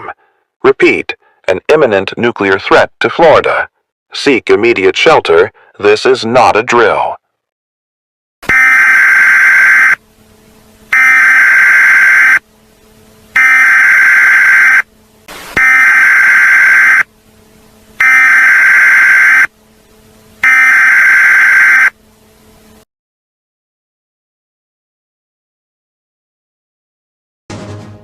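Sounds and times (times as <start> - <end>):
buzzing electronic data bursts: 8.5 - 10.0, 10.9 - 12.4, 13.3 - 17.1, 18.0 - 19.5, 20.4 - 22.0.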